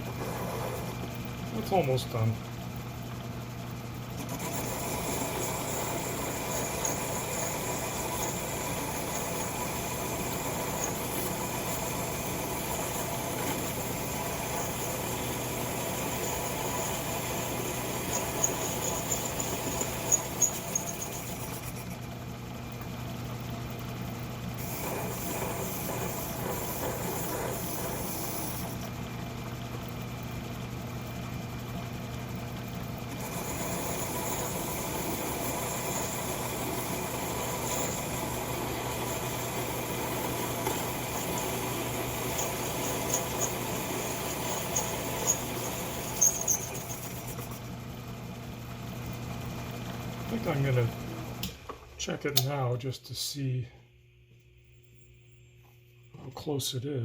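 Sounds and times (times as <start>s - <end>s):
lathe motor hum: 2.3s - 31.6s, 32.7s - 51.6s
high thin cutting whine: 4.4s - 22.0s, 33.2s - 47.6s.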